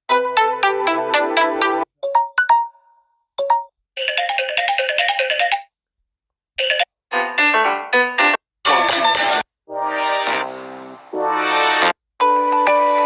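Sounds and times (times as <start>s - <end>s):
short electronic ringtone melodies: 2.0s - 5.7s.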